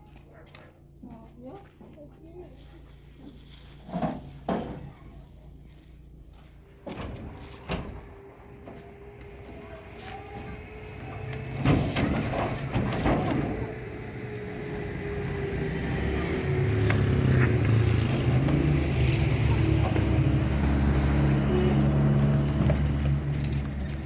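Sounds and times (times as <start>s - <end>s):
vehicle engine humming: 0.0s - 24.0s.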